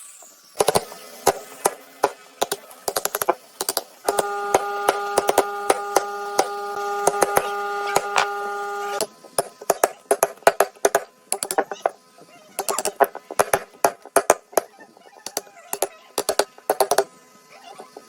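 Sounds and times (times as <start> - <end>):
steady humming tone: 1.1 - 18.0.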